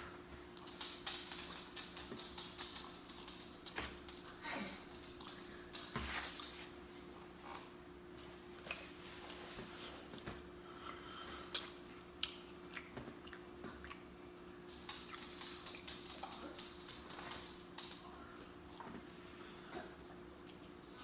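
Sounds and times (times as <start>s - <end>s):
chewing with lip smacks: 11.5s - 16.5s, 20.2s - 20.9s.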